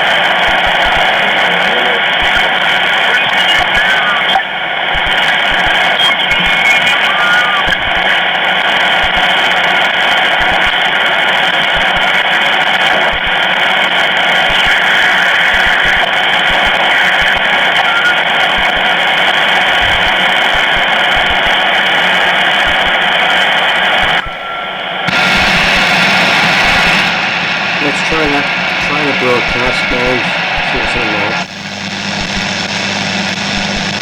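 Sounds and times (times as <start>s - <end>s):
radio static hiss: 0.0s - 34.0s
faint steady whistles: 20.0s - 31.5s.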